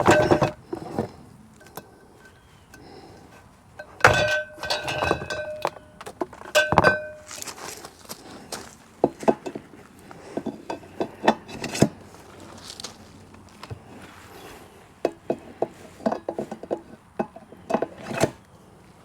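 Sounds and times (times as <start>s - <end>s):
metal legs clanking: 0.0s - 2.8s, 3.8s - 7.9s, 8.5s - 12.0s.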